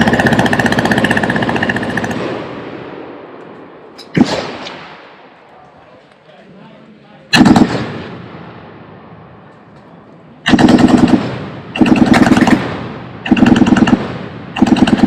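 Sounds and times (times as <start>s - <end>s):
machine gun bursts with echo: 0.0s - 2.9s, 7.3s - 8.2s, 10.5s - 15.0s.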